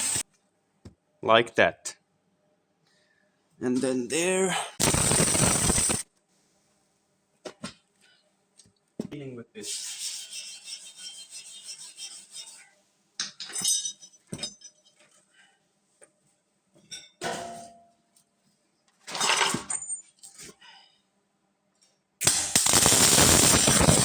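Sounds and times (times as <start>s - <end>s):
loud steady burst of noise: 0.0s - 0.2s, 4.8s - 6.0s, 22.2s - 24.0s
metallic clinks and scrapes: 11.0s - 15.5s, 19.1s - 20.9s.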